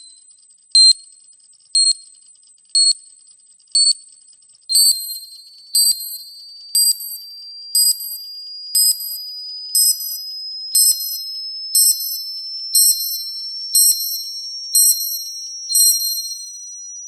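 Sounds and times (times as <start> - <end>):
electronic beeps: 4.7 - 7.0, 9.7 - 17.0.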